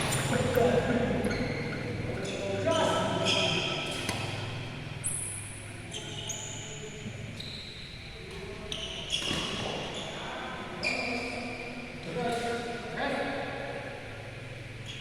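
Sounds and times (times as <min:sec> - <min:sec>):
court shoes squeaking: 0:00.0 - 0:12.6, 0:14.7 - 0:15.0
racket hitting shuttlecock: 0:03.8 - 0:04.6.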